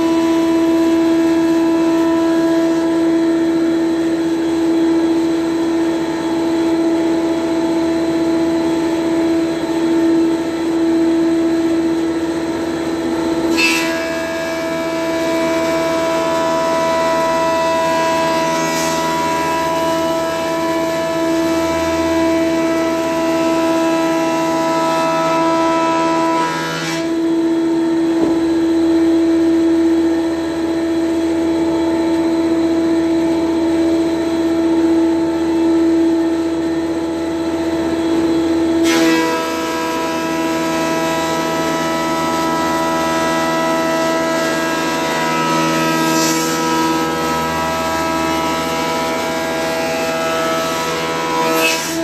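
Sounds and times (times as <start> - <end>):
thickness planer humming: 0.0 - 52.0.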